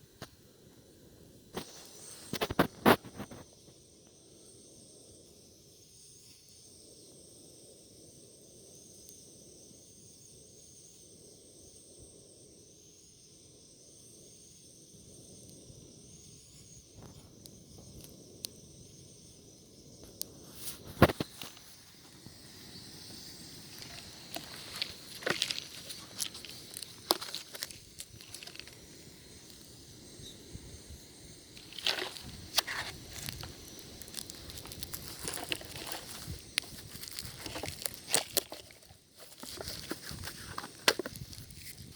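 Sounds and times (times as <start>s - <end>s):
wood fire crackling: 20.1s - 30.1s, 31.1s - 41.9s.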